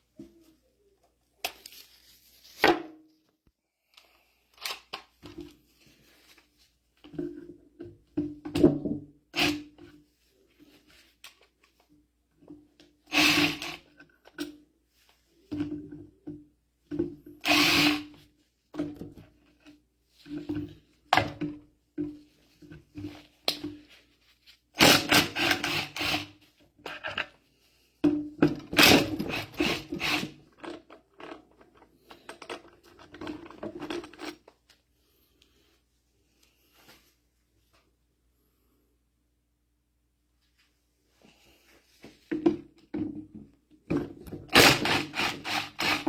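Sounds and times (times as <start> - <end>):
electric drill bursts: 17.5 - 18.0, 44.5 - 46.0.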